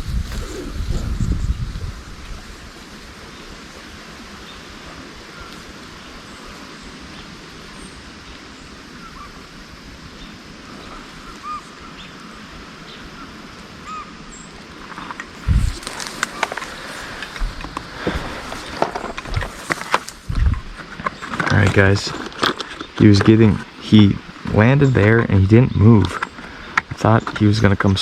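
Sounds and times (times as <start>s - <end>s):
faint bird calls: 0.0s - 28.0s
outdoor hiss: 0.0s - 28.0s
clicks and rustling: 14.8s - 27.5s.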